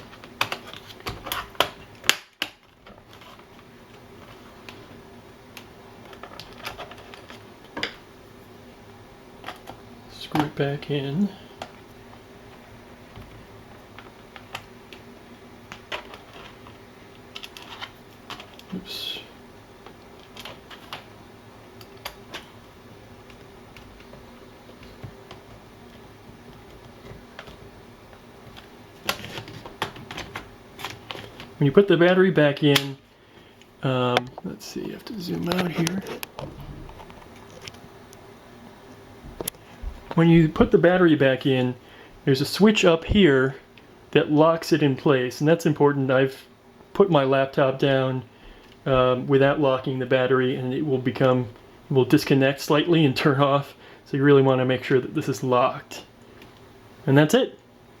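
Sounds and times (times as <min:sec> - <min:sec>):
plastic parts being handled: 0:00.0 - 0:08.0, 0:15.7 - 0:18.8, 0:19.8 - 0:21.1, 0:21.8 - 0:31.6.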